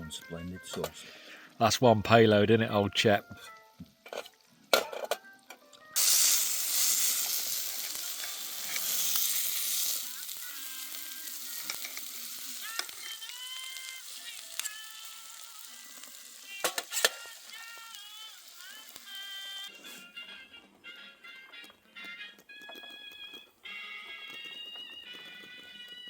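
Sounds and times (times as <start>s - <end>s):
food sizzling on hot stone: 6.0s - 19.7s.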